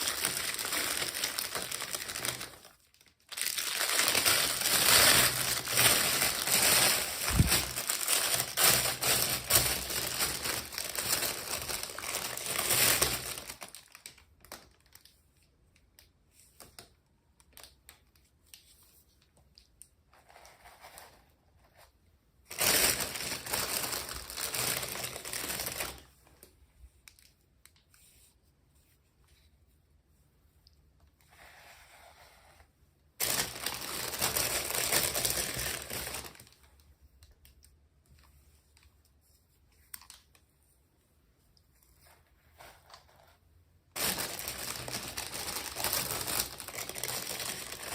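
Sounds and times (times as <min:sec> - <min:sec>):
plastic packaging crinkling: 0:00.0 - 0:15.2, 0:22.5 - 0:26.1, 0:33.2 - 0:36.6, 0:43.9 - 0:47.9.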